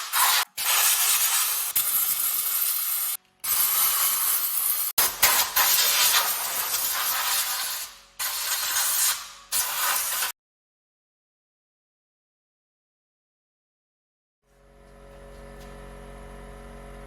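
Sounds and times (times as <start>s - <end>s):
compressed air hissing: 0.0s - 10.3s.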